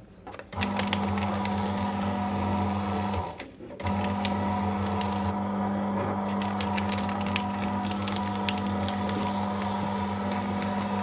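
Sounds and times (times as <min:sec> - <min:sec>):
paper shredder motor hum: 0:00.5 - 0:11.0
paper crackling as cut: 0:06.2 - 0:11.0.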